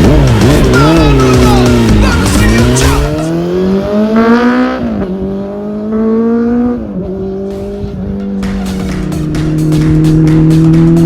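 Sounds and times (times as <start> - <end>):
motorcycle accelerating through gears: 0.0 - 11.0.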